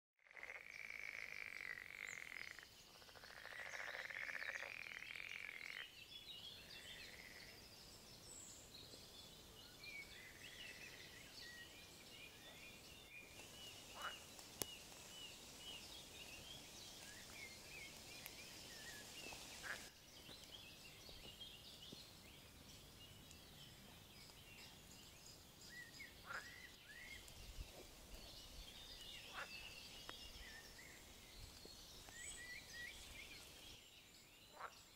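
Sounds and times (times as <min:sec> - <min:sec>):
frogs calling in pulsing trills: 0:00.3 - 0:05.9.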